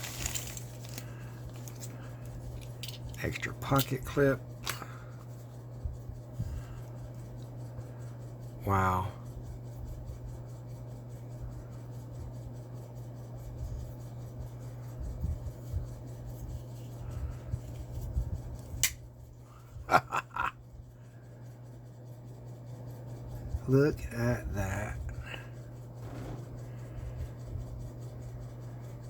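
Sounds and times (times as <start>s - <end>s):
rubbing of knife packaging: 0.0s - 4.2s
steady low hum: 0.0s - 29.0s
folding knife clicks: 18.8s - 19.0s
low bumps: 26.0s - 27.8s.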